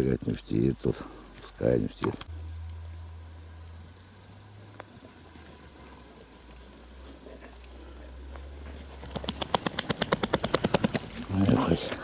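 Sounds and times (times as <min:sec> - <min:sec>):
dog panting: 0:09.2 - 0:12.0.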